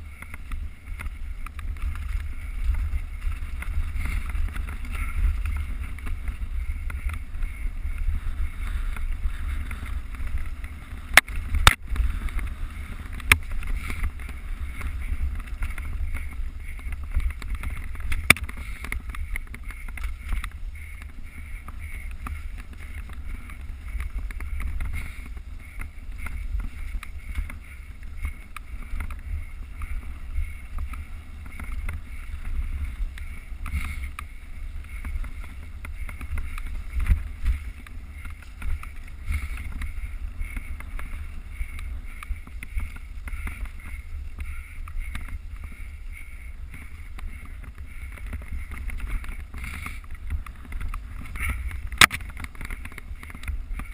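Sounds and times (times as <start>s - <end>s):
tyre and trail noise: 0.0s - 53.9s
wind rumbling over microphone: 0.0s - 53.9s
sharp knocks from bike: 51.4s - 53.9s.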